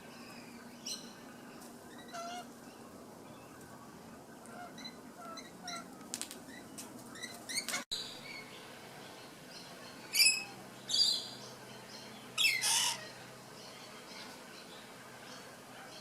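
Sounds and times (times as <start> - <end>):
parrot harsh screeches: 12.4 - 13.0
parrots chirping: 12.4 - 13.1.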